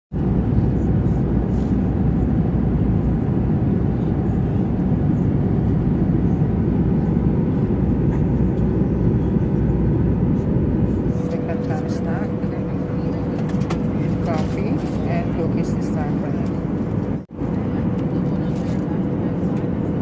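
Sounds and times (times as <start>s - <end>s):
airliner cabin rumble: 0.1s - 20.0s.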